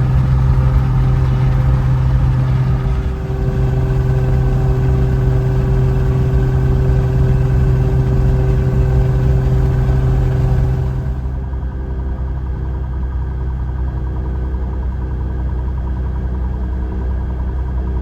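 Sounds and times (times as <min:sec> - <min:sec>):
aircraft engine droning: 0:00.0 - 0:13.3.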